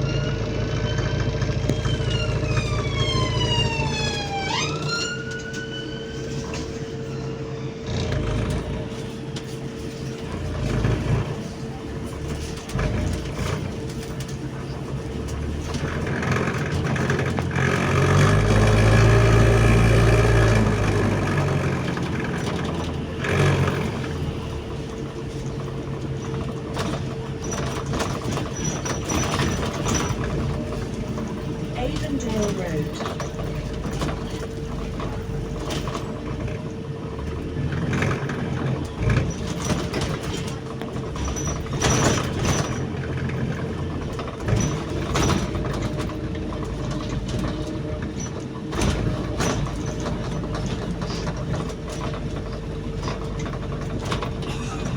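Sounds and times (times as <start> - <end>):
bus engine humming: 0.0 - 54.9
rattles inside bus: 0.0 - 54.9
siren wailing: 1.7 - 6.4.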